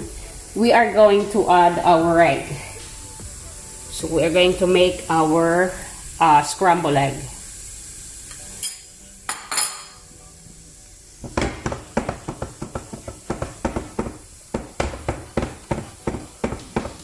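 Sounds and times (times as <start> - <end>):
wooden spoon knocking on pan: 11.2 - 17.0.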